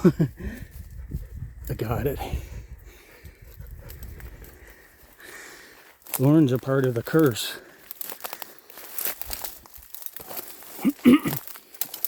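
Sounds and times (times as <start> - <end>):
leaves crackling underfoot: 4.0 - 12.0.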